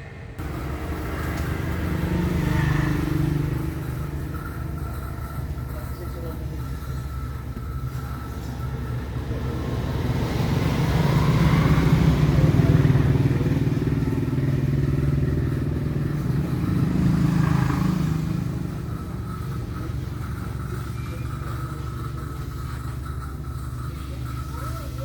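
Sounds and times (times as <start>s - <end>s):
low motor rumble: 0.0s - 25.0s.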